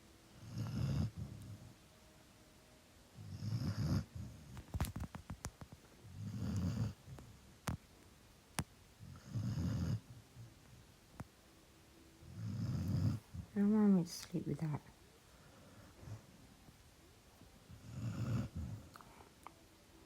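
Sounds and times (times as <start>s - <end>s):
pet snoring loudly: 0.4s - 1.6s, 3.2s - 4.5s, 6.1s - 7.0s, 9.0s - 10.1s, 12.3s - 13.4s, 17.7s - 19.0s.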